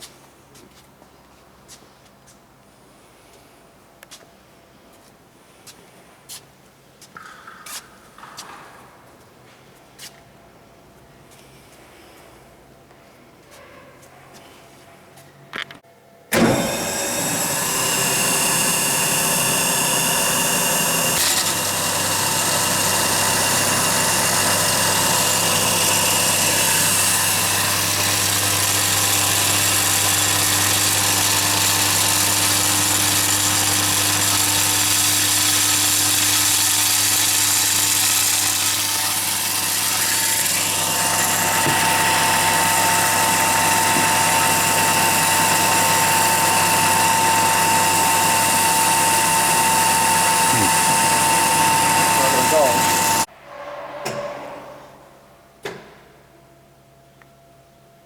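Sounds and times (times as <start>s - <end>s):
grinding machine humming: 16.3s - 53.3s.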